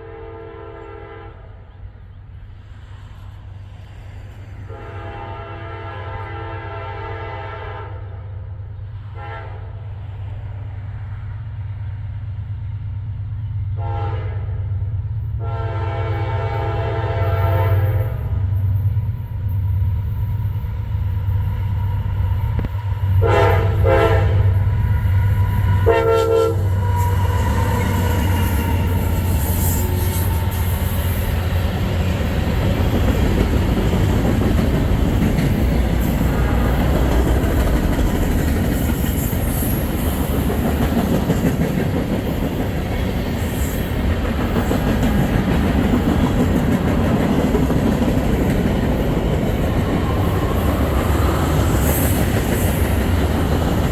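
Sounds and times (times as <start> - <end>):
train horn blasts: 0.0 - 1.9, 4.6 - 8.4, 9.1 - 10.0, 13.7 - 14.8, 15.4 - 18.6, 22.6 - 31.5, 36.0 - 37.4
freight cars rumbling and clattering: 26.8 - 53.9.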